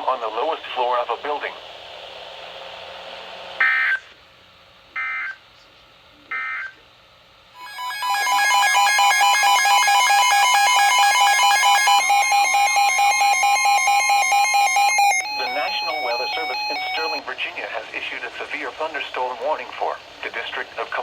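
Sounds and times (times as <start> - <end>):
continuous electronic alarm: 5.0 - 5.4, 6.3 - 6.8, 7.6 - 17.3
shrill data bursts: 7.6 - 17.3.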